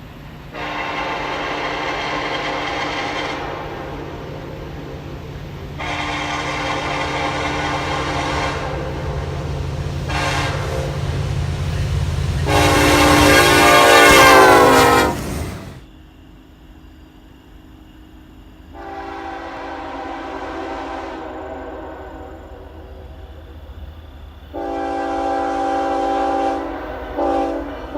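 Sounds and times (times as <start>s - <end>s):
low rumble of passing train: 0.0s - 27.9s
train air horn blasts: 0.5s - 5.0s, 5.7s - 11.3s, 12.2s - 15.9s, 18.8s - 22.6s, 24.6s - 27.9s
faint train horn: 0.5s - 15.9s, 18.7s - 23.6s, 24.5s - 27.9s.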